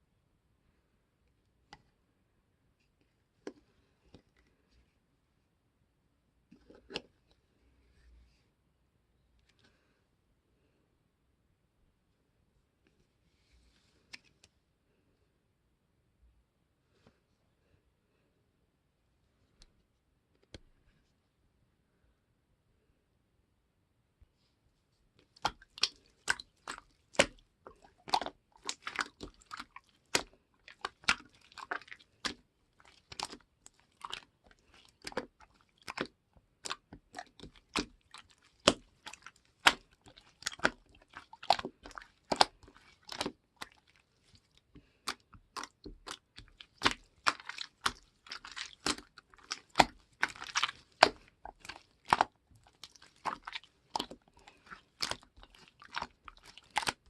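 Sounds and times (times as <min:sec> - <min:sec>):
slime clicking and popping: 0:25.4 - 0:43.9, 0:45.0 - 0:57.0.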